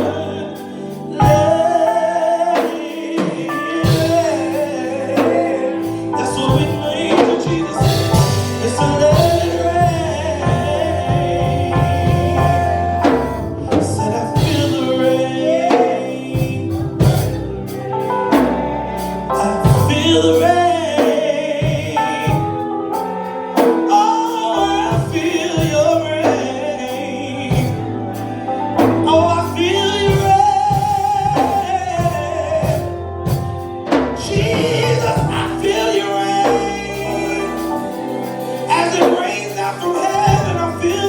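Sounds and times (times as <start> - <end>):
gospel singing with band: 0.0 - 41.0
drum hits: 6.3 - 15.2.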